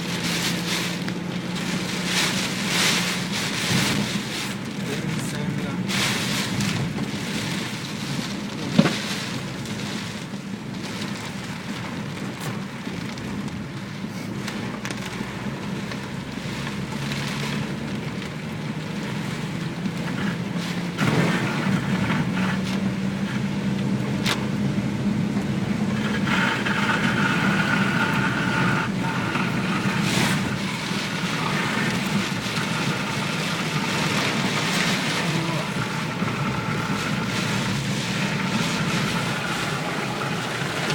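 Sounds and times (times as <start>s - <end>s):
rain: 0.0s - 40.9s
river rushing: 27.2s - 40.9s.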